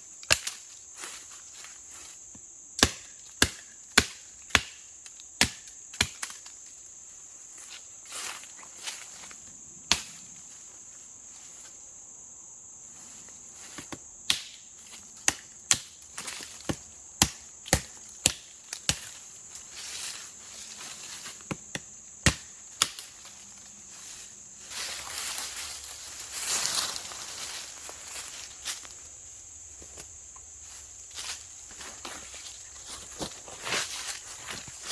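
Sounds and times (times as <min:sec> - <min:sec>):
insects chirring: 0:00.0 - 0:34.9.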